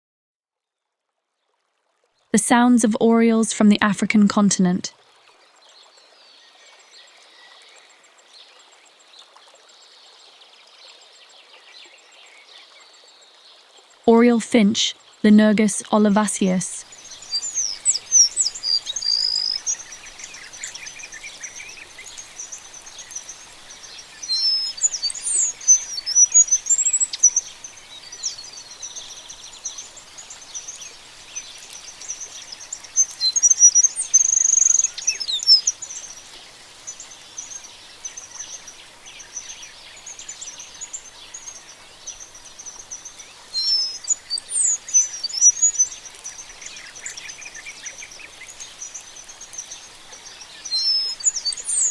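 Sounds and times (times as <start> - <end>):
high chirring background: 14.1 - 37.0
finch twittering: 15.6 - 51.9.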